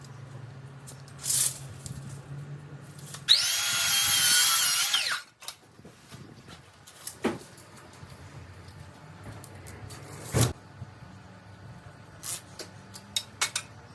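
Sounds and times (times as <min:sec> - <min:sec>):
power drill whining: 0:03.3 - 0:05.3.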